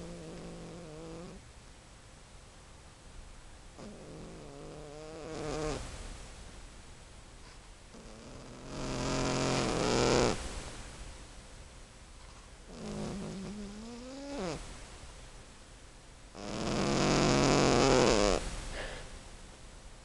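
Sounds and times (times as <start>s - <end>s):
cat snoring: 0.0s - 1.4s, 3.8s - 5.9s, 7.9s - 10.4s, 12.7s - 14.7s, 16.4s - 18.9s.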